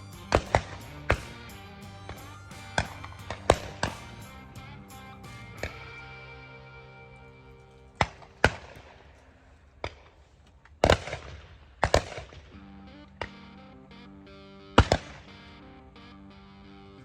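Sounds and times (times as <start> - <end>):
background music: 0.0 - 9.0, 12.6 - 17.0
shotgun shots: 10.8 - 12.4
distant gunshots: 10.8 - 12.5.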